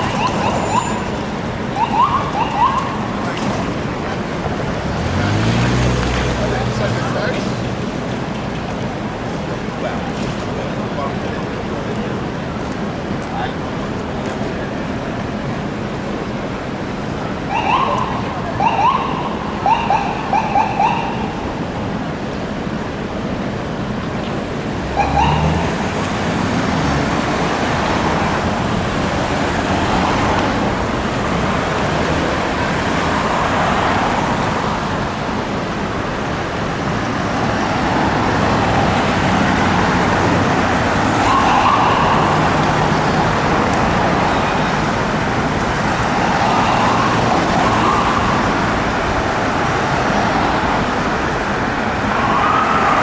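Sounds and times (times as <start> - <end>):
ambulance siren wailing: 0.0 - 4.0, 17.3 - 21.8, 24.9 - 34.5, 37.0 - 53.0
city street traffic: 0.0 - 53.0.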